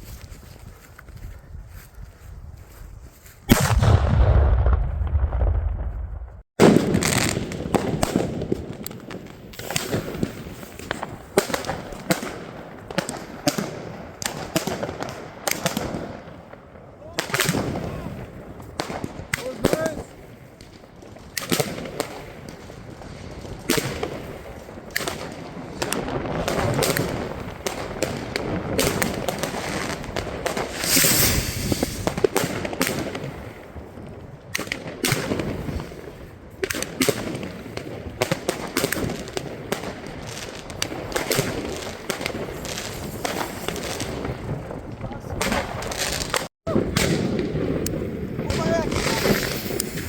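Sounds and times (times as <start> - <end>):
fireworks bangs and crackles: 2.6 - 50.0
fireworks hissing burst: 30.5 - 32.2, 48.9 - 50.0.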